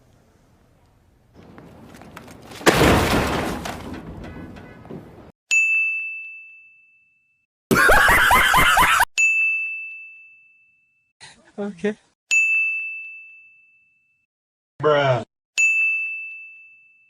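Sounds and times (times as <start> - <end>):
loud crash: 2.5 - 4.6.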